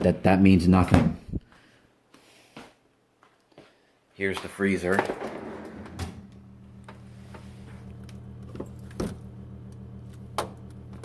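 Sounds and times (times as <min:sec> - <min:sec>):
refrigerator hum: 0:05.1 - 0:11.0.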